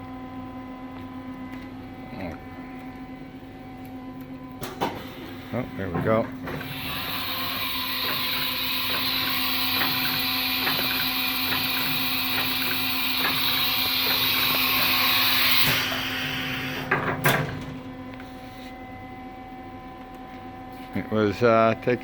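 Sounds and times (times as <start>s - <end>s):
machine hissing with faint ticking: 4.6s - 17.5s
sharp machine clunks: 16.8s - 17.8s.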